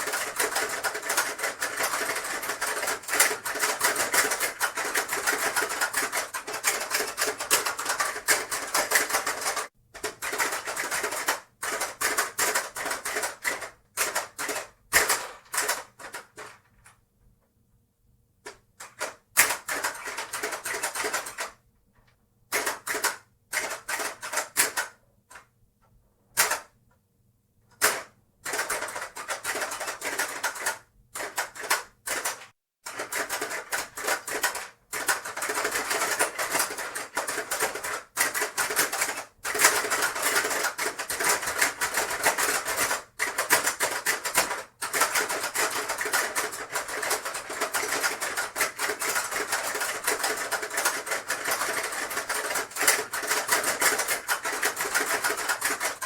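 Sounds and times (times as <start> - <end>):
plastic game pieces clacking: 0.0 - 11.1, 28.5 - 56.0.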